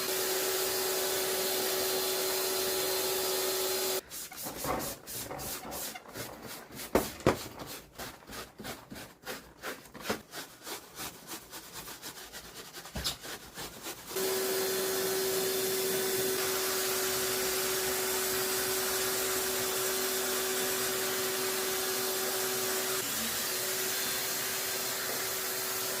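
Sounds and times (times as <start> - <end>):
cleaning machine hissing and humming: 0.0 - 4.0, 14.1 - 26.0
rapid scrubbing strokes: 4.0 - 14.2.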